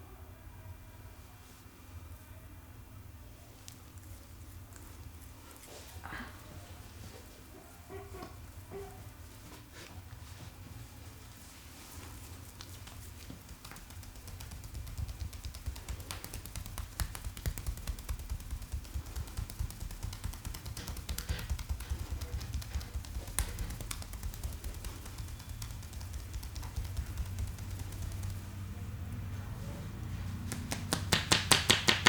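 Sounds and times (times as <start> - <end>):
hands tapping on a head: 12.5 - 28.5, 30.5 - 32.0.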